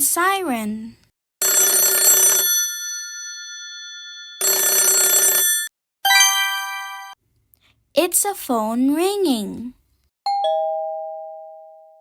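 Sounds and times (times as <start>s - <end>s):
telephone bell ringing: 1.4s - 7.2s.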